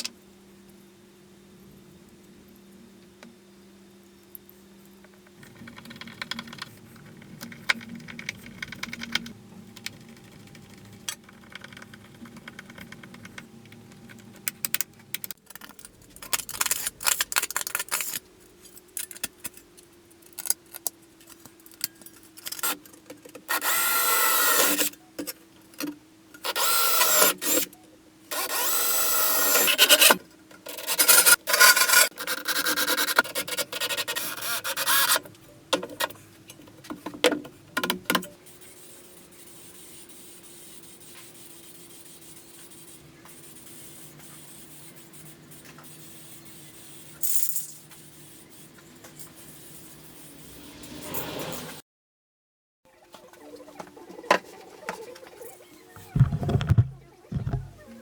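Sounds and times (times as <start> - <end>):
workpiece grinding on belt: 56.0 - 57.8.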